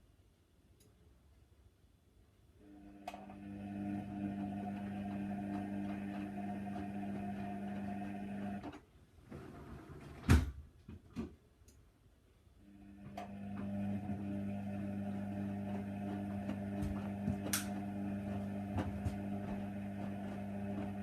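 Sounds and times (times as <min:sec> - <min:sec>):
washing machine drum motor humming: 0:02.8 - 0:08.8, 0:12.8 - 0:21.0.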